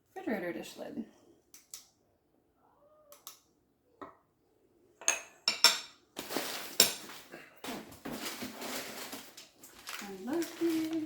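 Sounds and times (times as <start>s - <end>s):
glass dishes clinking: 5.0s - 6.0s
dishes shuffling and scraping: 5.0s - 11.0s.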